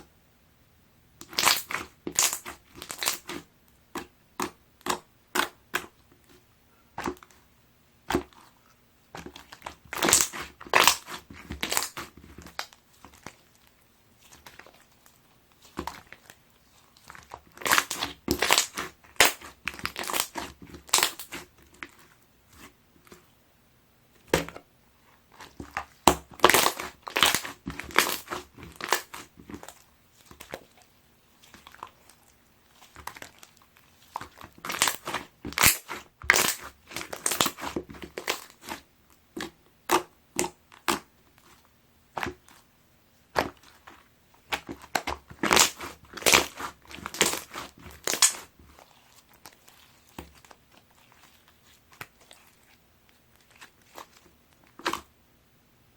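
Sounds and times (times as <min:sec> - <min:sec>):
slime squeezed by hand: 0:01.2 - 0:03.4, 0:09.2 - 0:13.6, 0:14.2 - 0:23.2, 0:25.3 - 0:38.8, 0:43.3 - 0:55.1.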